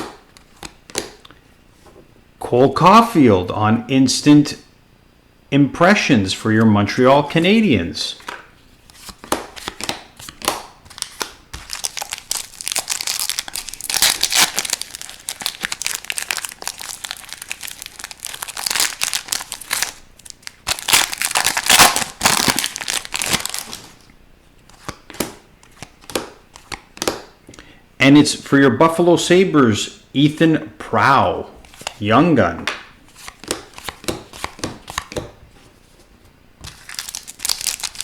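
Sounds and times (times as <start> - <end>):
card wrappers crinkling and tearing: 8.2 - 24.0, 25.7 - 27.2, 33.2 - 35.2, 36.6 - 38.0.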